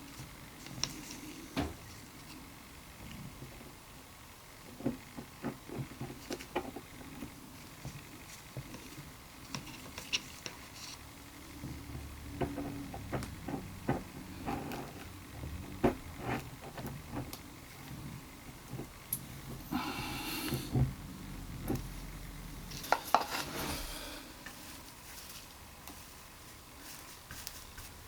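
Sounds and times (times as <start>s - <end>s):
scraping or rustling bursts: 22.7s - 28.0s.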